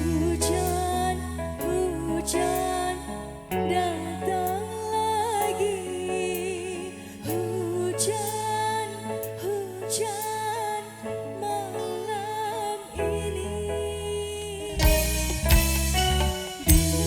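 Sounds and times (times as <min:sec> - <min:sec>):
held bass notes: 0:00.0 - 0:04.4, 0:14.8 - 0:17.0
slow sung melody: 0:00.0 - 0:17.0.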